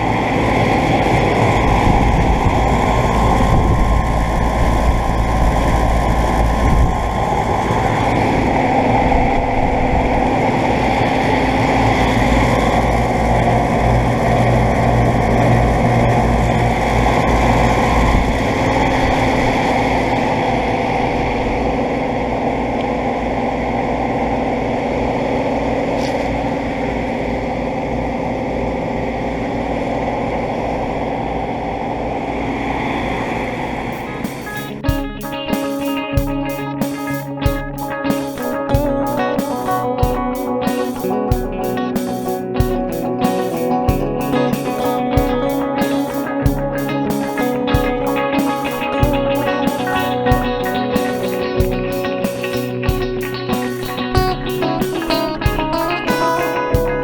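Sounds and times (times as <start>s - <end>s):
compressor hum: 0.0s - 57.0s
fan whoosh: 0.0s - 57.0s
steady tones: 31.5s - 57.0s.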